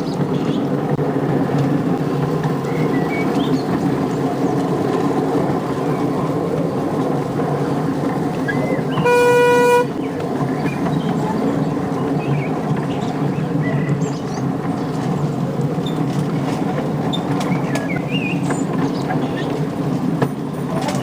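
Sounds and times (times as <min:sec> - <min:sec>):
miniature train rumbling on track: 0:00.0 - 0:21.0
train toot: 0:08.0 - 0:16.1.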